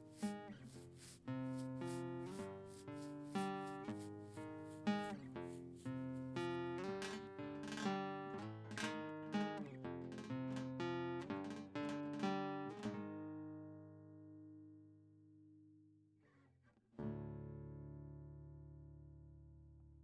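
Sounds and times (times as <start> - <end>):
acoustic guitar music: 0.0 - 14.6.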